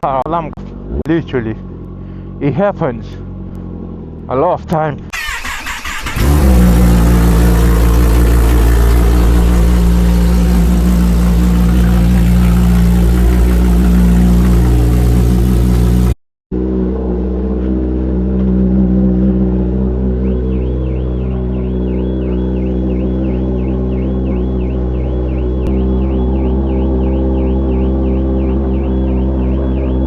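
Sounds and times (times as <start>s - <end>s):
motorcycle engine idling: 5.8s - 16.2s.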